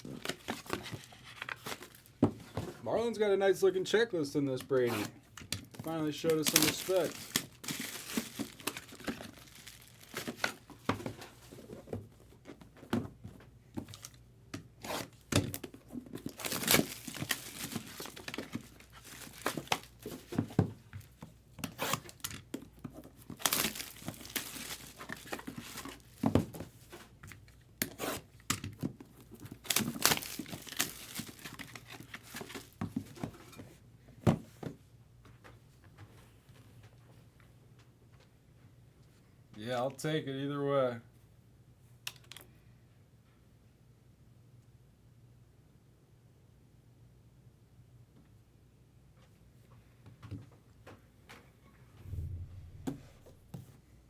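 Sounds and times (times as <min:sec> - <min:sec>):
packaging tearing and crinkling: 0:06.2 - 0:10.7, 0:16.2 - 0:20.0, 0:23.4 - 0:26.0, 0:29.6 - 0:32.7.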